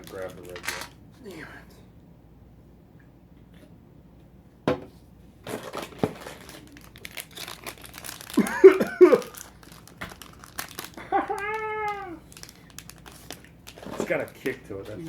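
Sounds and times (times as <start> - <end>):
foil pack crinkling and tearing: 0.0 - 0.9, 5.5 - 15.0
crackly clicks: 9.1 - 14.6.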